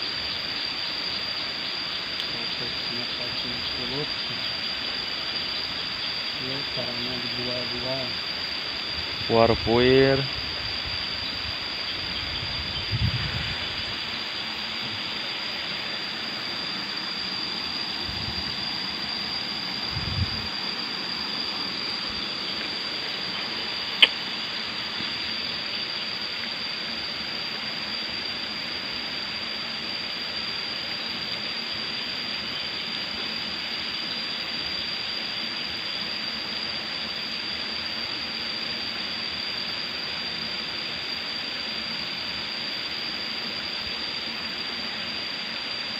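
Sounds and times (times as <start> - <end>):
sharp click: 24.0 - 24.2.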